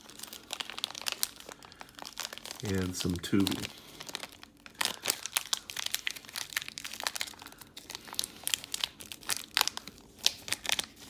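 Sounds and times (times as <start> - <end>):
packaging crinkling: 0.0 - 11.0.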